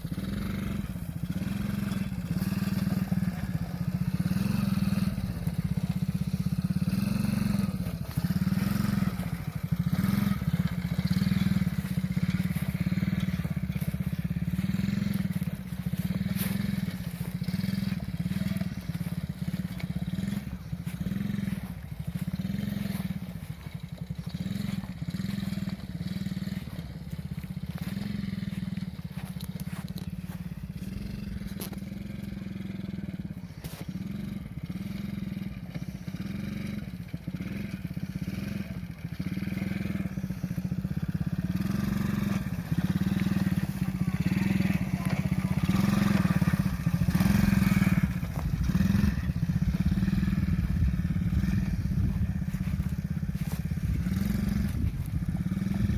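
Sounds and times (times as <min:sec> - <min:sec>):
small atv engine pulsing drone: 0:00.0 - 0:55.9
crunching and rattling: 0:07.3 - 0:31.8.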